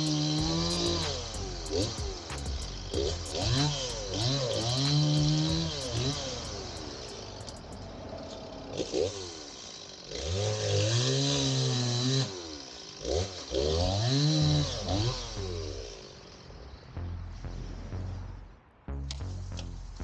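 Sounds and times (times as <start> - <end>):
chainsaw revving: 0.0 - 16.4.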